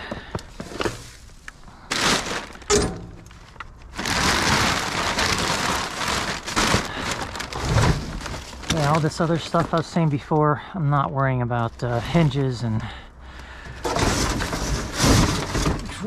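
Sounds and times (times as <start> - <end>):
rustling and scraping of debris: 0.0 - 16.0.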